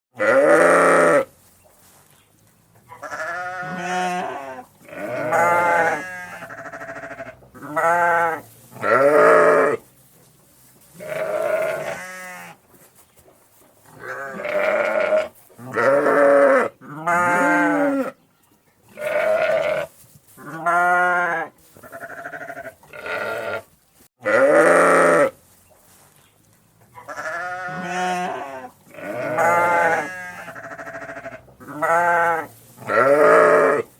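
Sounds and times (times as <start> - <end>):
sheep bleating: 0.2 - 1.3, 2.9 - 9.8, 11.0 - 12.6, 14.0 - 18.2, 18.9 - 25.4, 27.0 - 33.9.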